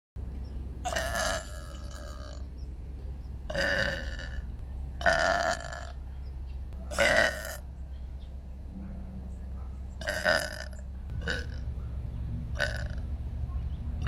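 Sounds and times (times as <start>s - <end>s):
person burping loudly: 0.9s - 2.4s, 3.5s - 4.4s, 5.0s - 5.9s, 7.0s - 7.6s, 10.0s - 11.6s, 12.6s - 13.0s.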